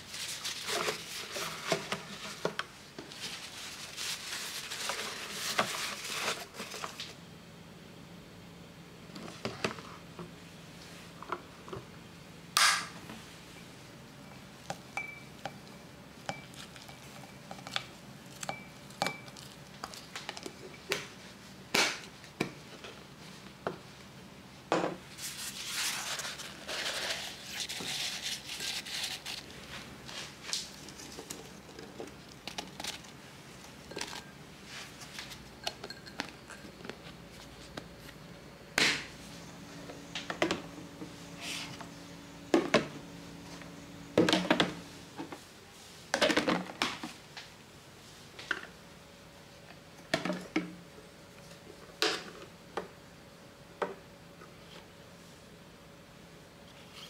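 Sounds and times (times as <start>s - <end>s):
plastic crinkling and rustling: 0.0s - 7.2s.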